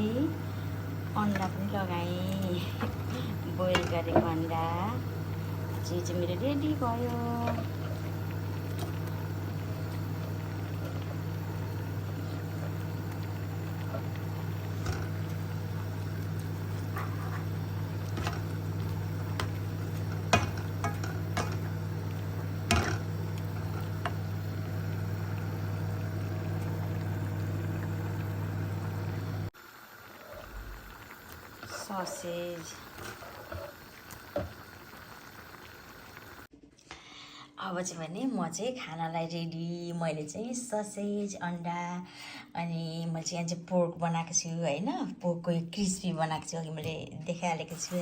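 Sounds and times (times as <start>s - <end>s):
low hum: 0.0s - 29.5s
soup bubbling in a pot: 0.0s - 36.5s.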